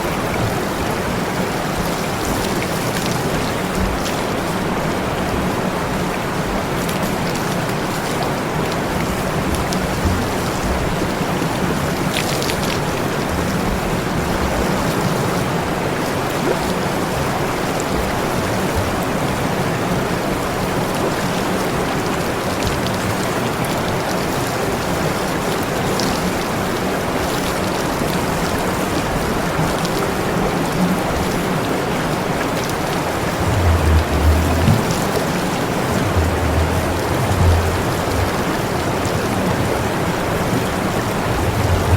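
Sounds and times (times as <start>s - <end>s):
water spraying: 33.2s - 40.0s, 40.7s - 41.9s
low steady hum: 33.3s - 39.9s, 41.1s - 41.9s.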